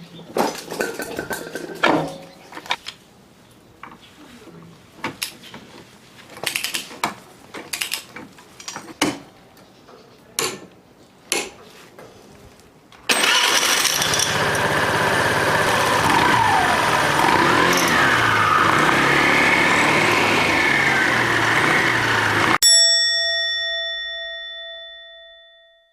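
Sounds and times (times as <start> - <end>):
scooter engine running: 13.1 - 22.6.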